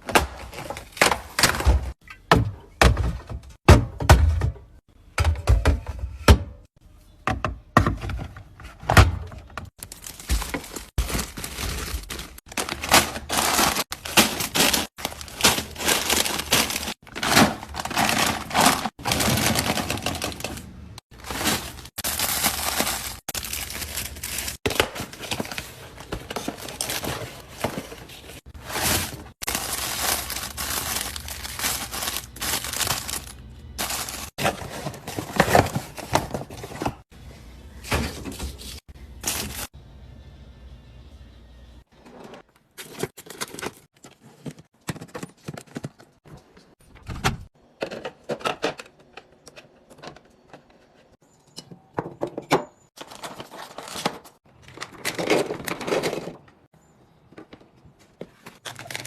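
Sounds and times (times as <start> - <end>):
packaging rustling: 9.8 - 37.0.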